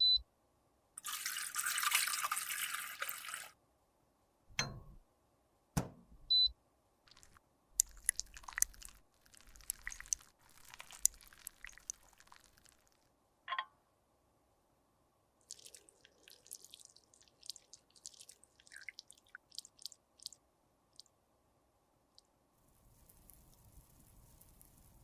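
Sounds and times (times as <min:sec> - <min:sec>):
makeup crackling and clicking: 0:07.1 - 0:12.9.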